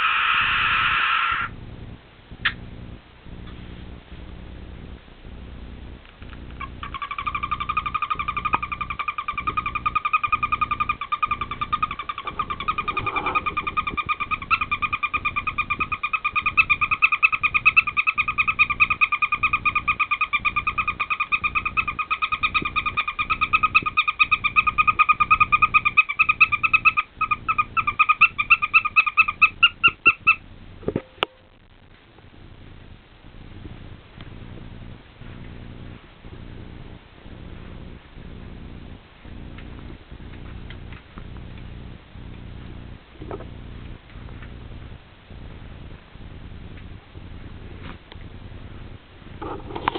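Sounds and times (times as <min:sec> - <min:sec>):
parrot trilling and chirping: 0:00.0 - 0:01.5, 0:06.6 - 0:30.4.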